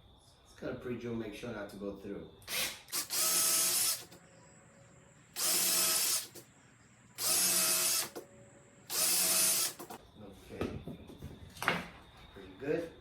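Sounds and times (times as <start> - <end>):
power drill boring into wood: 2.5 - 4.2, 5.3 - 6.4, 7.2 - 8.2, 8.8 - 10.0.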